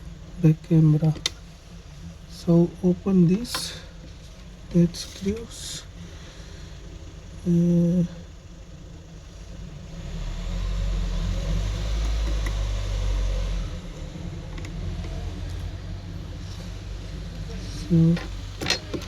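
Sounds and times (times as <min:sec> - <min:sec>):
vehicle engine rumble: 0:00.0 - 0:19.0
faint clicks: 0:12.0 - 0:12.6, 0:14.0 - 0:15.8.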